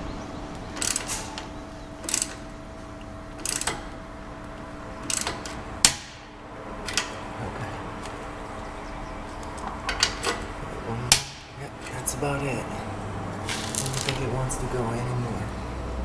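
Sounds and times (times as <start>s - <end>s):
socket ratchet clicking: 2.0s - 2.4s, 3.4s - 3.8s, 5.0s - 6.1s.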